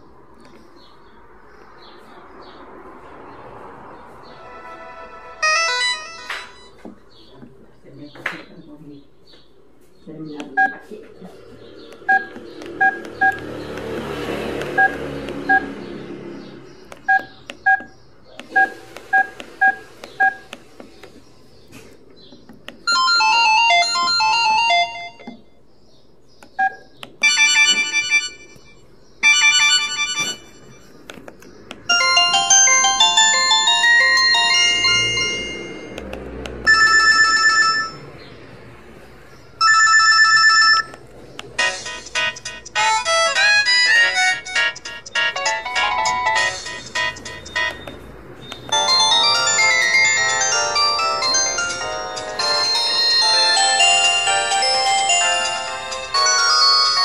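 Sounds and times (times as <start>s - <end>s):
polyphonic ringtone melodies: 4.4s - 6.9s, 22.8s - 25.5s, 26.6s - 30.9s, 31.9s - 38.1s, 39.6s - 41.0s, 41.6s - 57.0s
key-press beeps: 12.0s - 13.5s, 17.0s - 20.6s, 46.8s - 49.2s.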